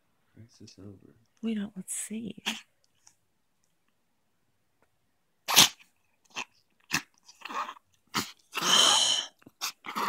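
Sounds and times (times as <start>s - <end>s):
dog sneezing: 5.4s - 5.9s.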